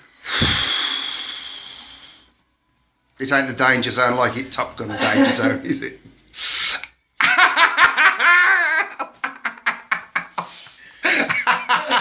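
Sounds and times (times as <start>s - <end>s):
person laughing: 4.9s - 5.7s, 7.2s - 12.0s.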